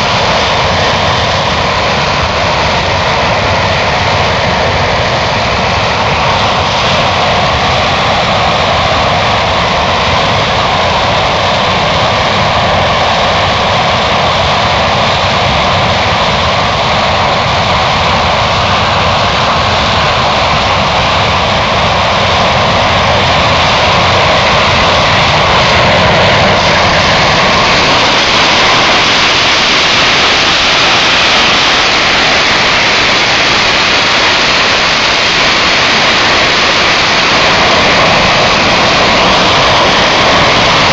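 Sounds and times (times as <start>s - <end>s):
jet engines running: 0.0s - 40.9s.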